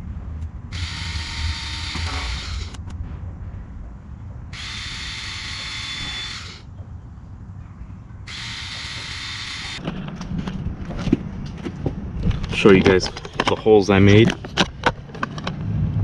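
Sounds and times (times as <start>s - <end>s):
power drill drilling plastic: 0.8s - 2.8s, 4.6s - 6.6s, 8.3s - 9.8s.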